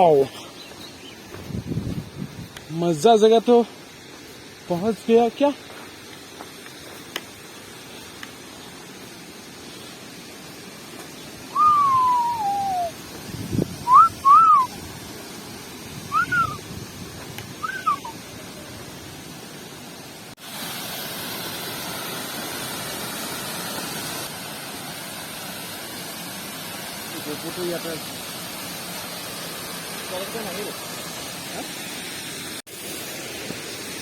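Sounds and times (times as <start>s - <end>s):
waterfall rushing: 2.7s - 16.7s, 17.3s - 34.0s
person whistling: 11.5s - 13.0s, 13.8s - 14.7s, 16.1s - 16.6s, 17.6s - 18.1s.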